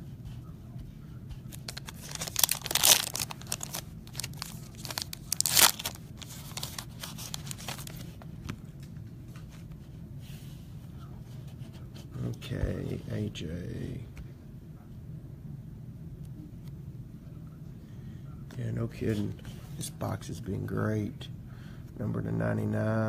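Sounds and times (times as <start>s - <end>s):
wrapping tearing and crinkling: 1.5s - 8.2s.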